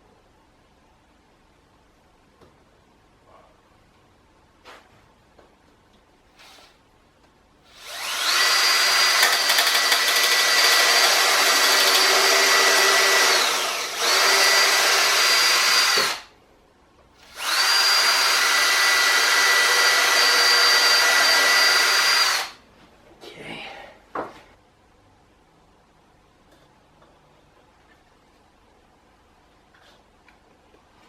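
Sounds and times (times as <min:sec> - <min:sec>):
power drill motor whine: 0:07.7 - 0:16.2, 0:17.2 - 0:22.6.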